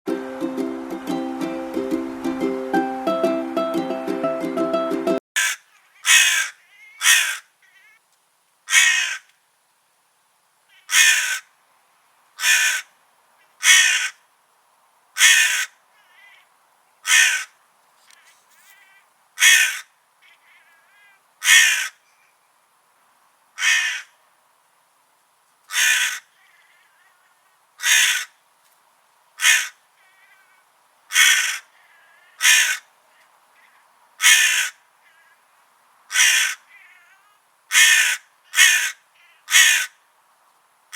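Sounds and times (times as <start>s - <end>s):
crows cawing: 5.4s - 8.0s, 8.7s - 9.3s, 10.7s - 11.5s, 12.4s - 14.2s, 15.2s - 17.6s, 18.2s - 22.0s, 23.6s - 24.2s, 25.7s - 28.4s, 29.4s - 35.5s, 36.1s - 40.0s.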